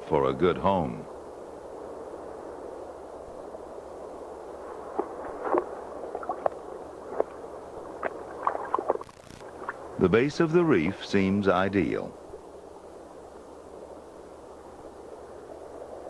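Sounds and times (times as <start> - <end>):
underwater watery wash: 3.4 - 16.0
short gurgles and blips: 8.0 - 9.8.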